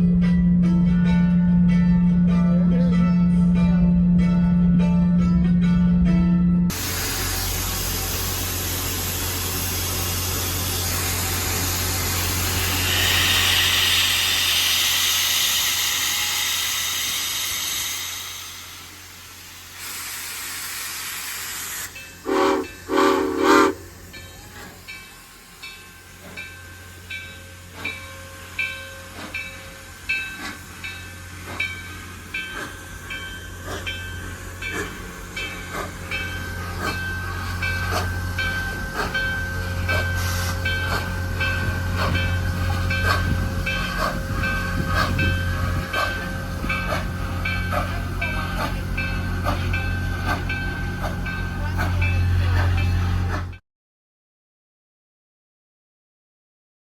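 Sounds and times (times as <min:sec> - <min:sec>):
steam hissing: 0:06.7 - 0:53.4
steam locomotive chuffing: 0:06.7 - 0:53.6
train whistle blasts: 0:11.6 - 0:18.5, 0:22.2 - 0:23.9.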